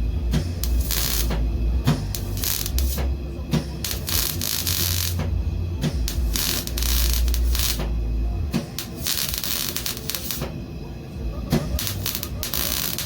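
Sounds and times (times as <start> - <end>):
welder arc crackling: 0.0 - 10.7, 11.4 - 13.0
low hum: 0.0 - 13.0.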